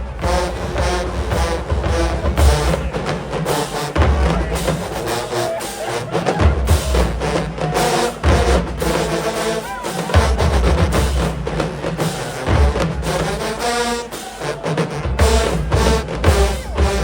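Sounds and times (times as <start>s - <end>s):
brass horns holding notes: 0.0s - 17.0s
snare drum strokes: 0.0s - 17.0s.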